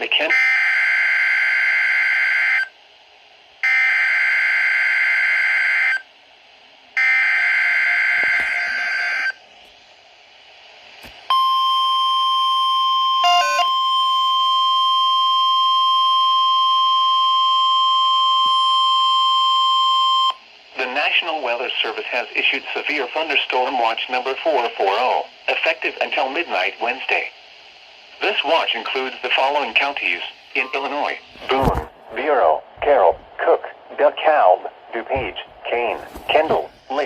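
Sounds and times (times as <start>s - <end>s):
steady high alarm tone: 0.3s - 2.7s, 3.6s - 6.1s, 7.0s - 9.4s, 11.3s - 20.4s, 30.5s - 31.2s.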